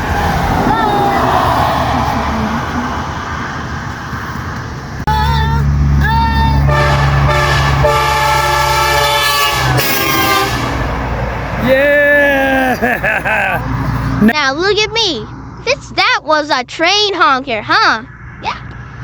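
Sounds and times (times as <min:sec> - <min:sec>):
train horn blast: 0:06.6 - 0:11.0.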